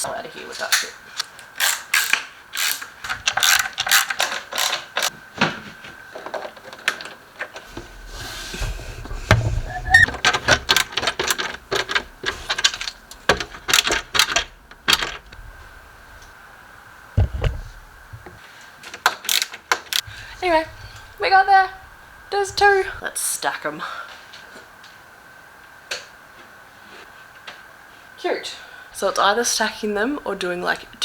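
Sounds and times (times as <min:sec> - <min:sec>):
screwdriver ratchet clicks: 0:01.6 - 0:05.1, 0:19.3 - 0:20.1
low rumble of handling: 0:07.6 - 0:18.4.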